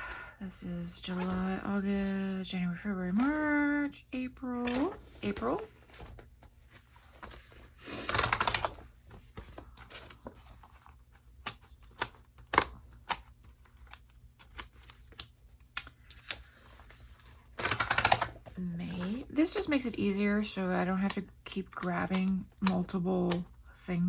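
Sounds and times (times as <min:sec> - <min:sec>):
paper rustling: 0:01.0 - 0:01.6, 0:03.0 - 0:03.6, 0:04.4 - 0:23.5
pages snapping onto discs: 0:04.6 - 0:06.3, 0:07.0 - 0:19.9, 0:21.0 - 0:23.5.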